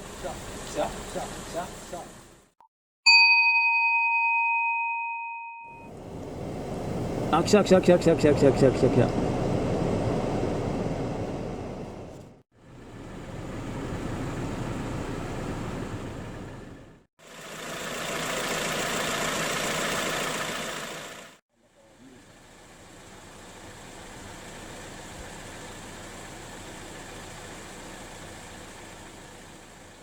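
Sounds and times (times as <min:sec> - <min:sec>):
car engine idling: 0:00.0 - 0:02.5, 0:05.9 - 0:30.0.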